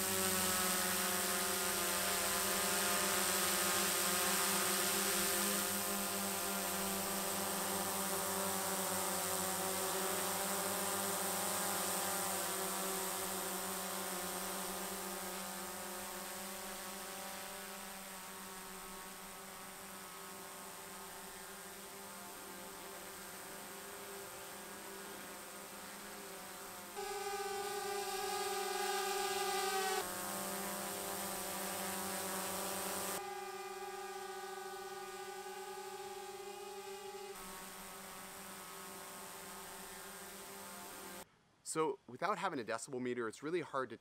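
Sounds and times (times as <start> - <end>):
quadcopter propellers humming: 0.0 - 41.2
louder drone hum: 26.9 - 41.2.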